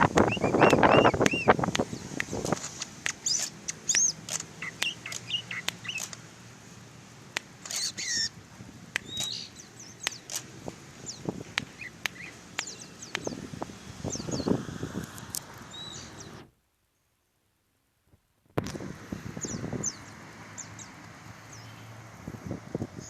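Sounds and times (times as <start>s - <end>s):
bird chirping: 0.0s - 6.2s, 7.6s - 14.6s, 15.7s - 16.5s, 19.4s - 22.0s
sharp clicks: 0.0s - 6.2s, 7.3s - 8.2s, 8.9s - 10.5s.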